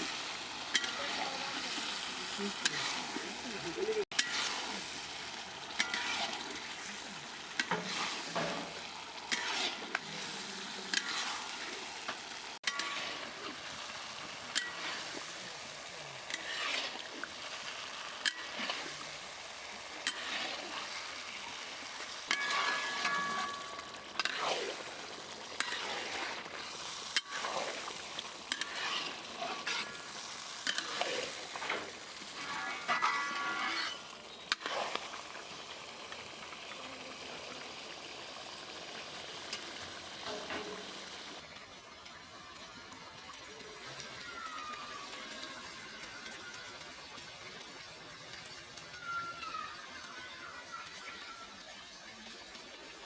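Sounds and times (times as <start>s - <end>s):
chicken sizzling in hot oil: 0.0s - 53.0s
metal spatula scraping pan: 0.2s - 3.5s, 4.1s - 35.2s.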